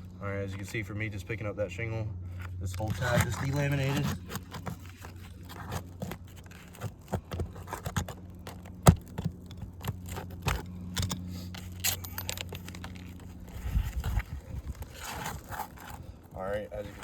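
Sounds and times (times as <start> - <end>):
shingle tearing: 2.3 - 17.0
nail puller scraping and clicking: 2.7 - 16.1.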